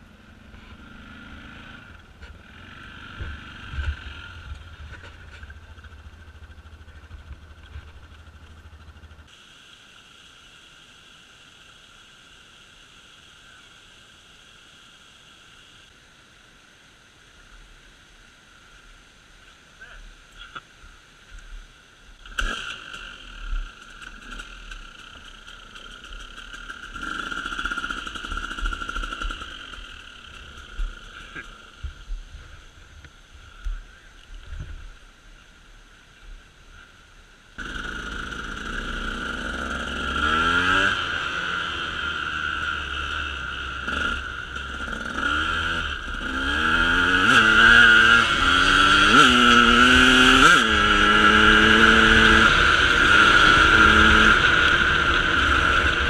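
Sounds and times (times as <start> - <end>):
vehicle engine revving: 0.0 - 9.3, 22.2 - 31.8, 37.6 - 56.0.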